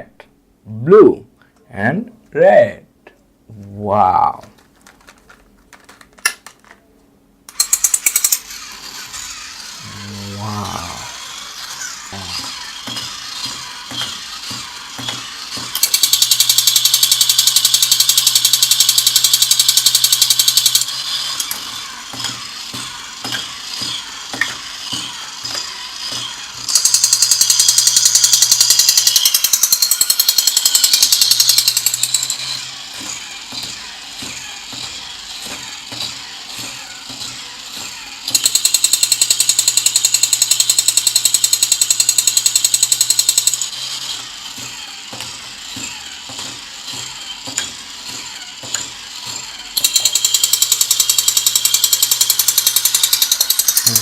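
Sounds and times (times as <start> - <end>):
toy gun rapid-fire rattle: 4.6 - 6.8, 7.5 - 54.0.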